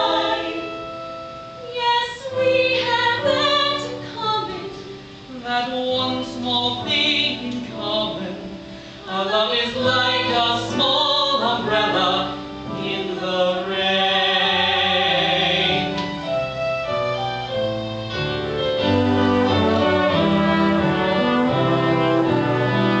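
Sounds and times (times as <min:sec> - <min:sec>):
voices singing a duet: 0:00.0 - 0:01.0, 0:01.7 - 0:16.0.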